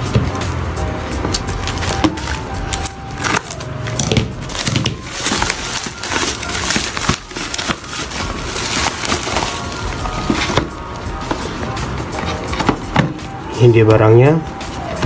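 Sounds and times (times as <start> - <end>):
packaging crinkling and rustling: 1.3 - 13.3.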